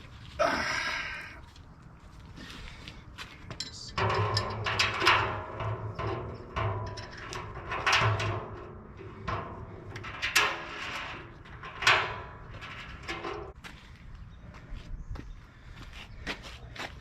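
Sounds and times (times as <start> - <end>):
metallic ringing: 3.6 - 13.6
metal knocks on steel drum: 4.0 - 13.6.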